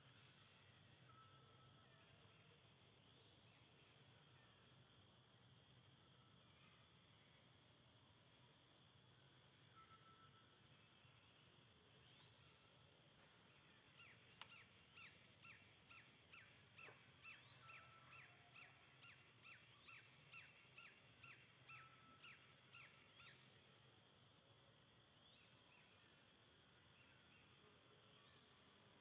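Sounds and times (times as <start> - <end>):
insects buzzing: 0.0 - 27.6.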